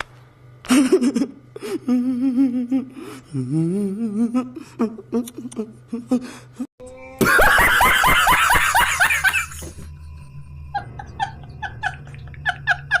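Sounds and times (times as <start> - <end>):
rapid cackling laugh: 7.2 - 9.9, 10.7 - 13.0.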